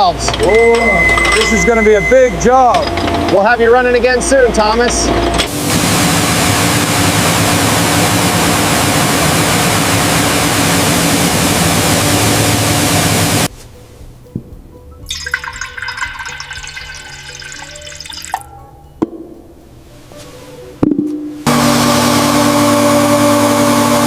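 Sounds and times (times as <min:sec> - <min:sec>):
spraying water rushing: 0:05.5 - 0:13.5
background music: 0:12.2 - 0:21.4
water trickling and dripping: 0:15.0 - 0:18.6.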